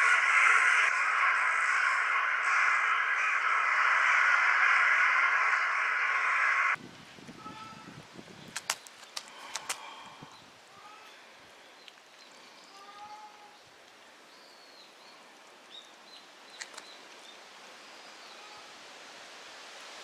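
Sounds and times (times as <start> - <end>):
low animal call: 0.0 - 6.8
faint outdoor hiss: 0.0 - 20.0
sharp clicks: 8.5 - 9.9.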